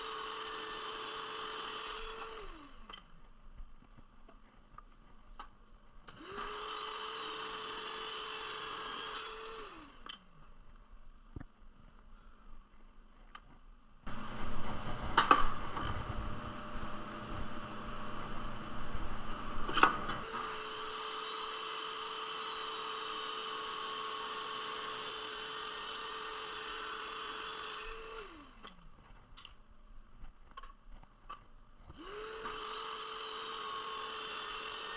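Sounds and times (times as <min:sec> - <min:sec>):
scroll saw running: 0:00.0 - 0:03.0, 0:06.1 - 0:10.2, 0:14.1 - 0:28.8, 0:31.9 - 0:34.9
power tool motor whining: 0:00.0 - 0:03.1, 0:06.1 - 0:10.2, 0:14.1 - 0:28.8, 0:31.9 - 0:34.9.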